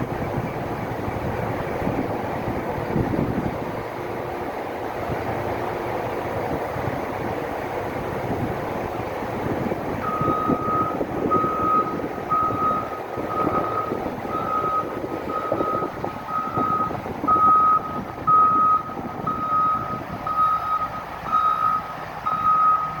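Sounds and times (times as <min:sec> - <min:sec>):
diesel engine running: 0:00.0 - 0:23.0
reverse alarm beeping: 0:10.0 - 0:23.0.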